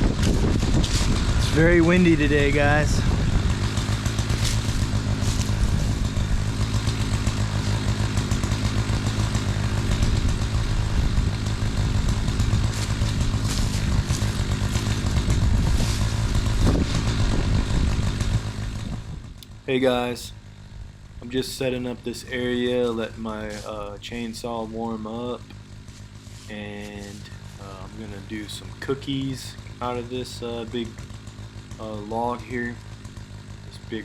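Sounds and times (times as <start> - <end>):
wind noise on microphone: 0.0 - 3.7, 9.8 - 19.4
chainsaw idling: 0.0 - 34.0.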